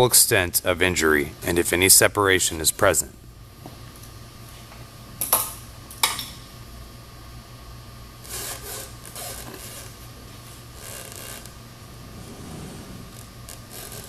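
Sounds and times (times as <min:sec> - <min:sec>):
steady low hum: 0:00.0 - 0:14.0
scraping and rattling: 0:11.2 - 0:14.0.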